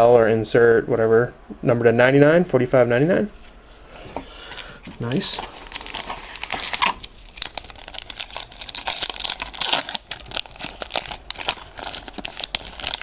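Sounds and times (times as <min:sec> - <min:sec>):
foil wrapper crinkling and tearing: 0:05.2 - 0:13.0.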